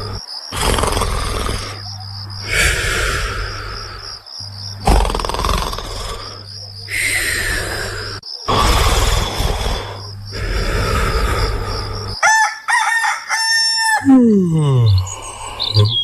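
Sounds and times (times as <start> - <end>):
snoring: 0.0 - 4.2, 4.8 - 12.2
rooster crowing: 12.2 - 14.2.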